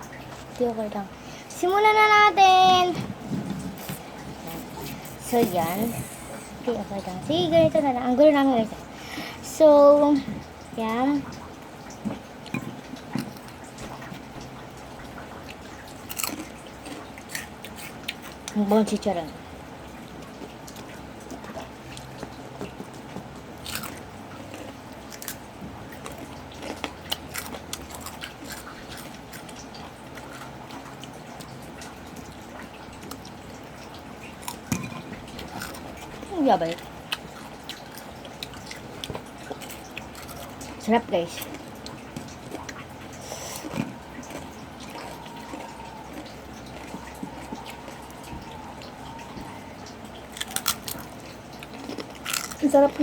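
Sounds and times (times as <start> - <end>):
low steady hum: 0.0 - 53.0
crunching and chewing crispy food: 11.3 - 19.1, 19.9 - 53.0.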